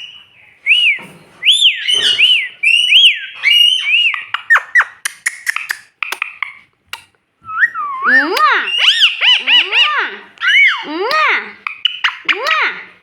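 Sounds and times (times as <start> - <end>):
parrot whistling: 0.0 - 5.8, 7.5 - 10.8
parrot chirps and clicks: 3.0 - 7.2, 8.3 - 12.8.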